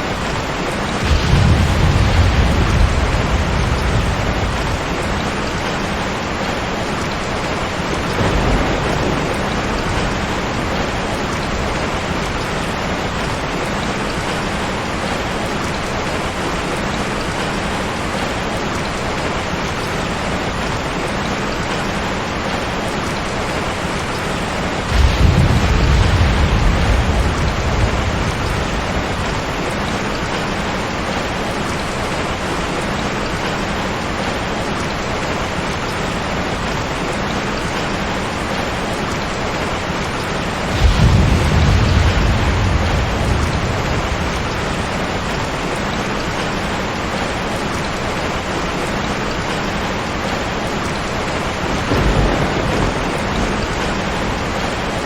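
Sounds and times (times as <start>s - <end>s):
heavy rain hiss: 0.0s - 55.0s
low rolls of thunder: 0.2s - 15.4s, 24.8s - 30.8s, 40.2s - 48.3s, 51.6s - 55.0s.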